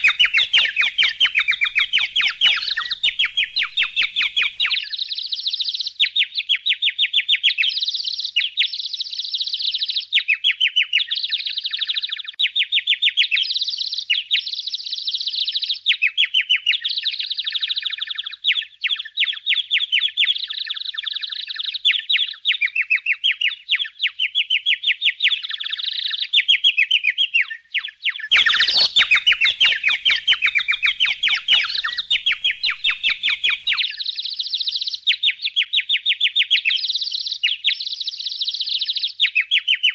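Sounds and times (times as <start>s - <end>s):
budgerigars chirping: 0.0s - 6.6s, 26.9s - 39.9s.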